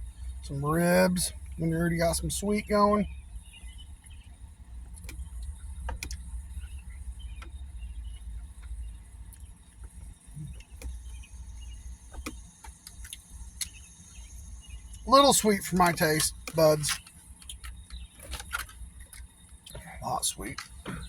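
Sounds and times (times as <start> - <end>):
crickets chirping: 0.0 - 21.0
small clicks: 4.9 - 6.7.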